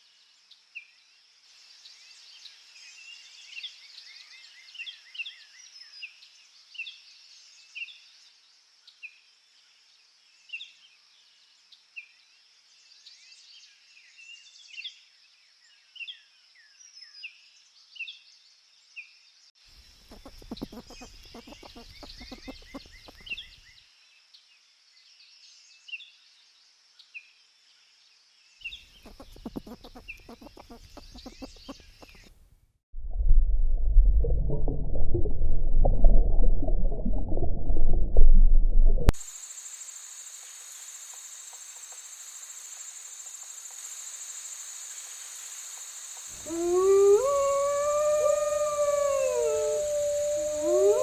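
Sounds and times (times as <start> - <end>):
short bird chirps: 20.1 - 23.6, 28.7 - 32.3
faint crackling: 29.0 - 32.4
loud low rumbling: 33.0 - 39.1
high insect drone: 39.3 - 51.0.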